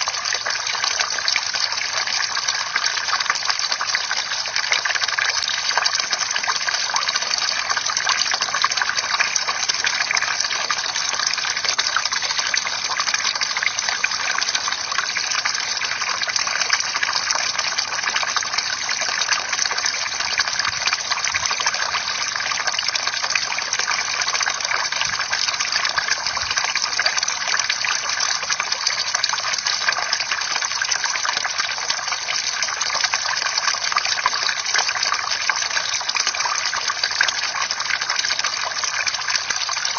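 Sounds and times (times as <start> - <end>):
water pouring and splashing: 0.0 - 39.9.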